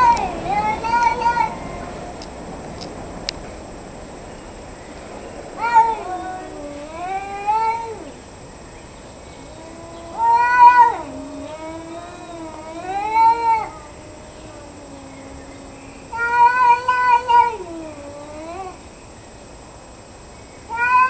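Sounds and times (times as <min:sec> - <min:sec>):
cat yowling: 0:00.0 - 0:02.0, 0:05.6 - 0:08.2, 0:09.4 - 0:18.8, 0:20.7 - 0:21.0.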